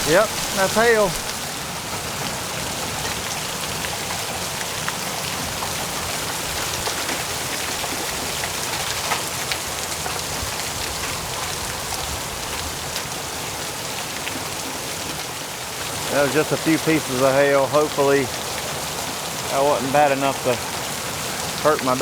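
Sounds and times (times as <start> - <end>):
hail ticking on metal roof: 0.0 - 22.0
rain on a metal roof: 0.0 - 22.0.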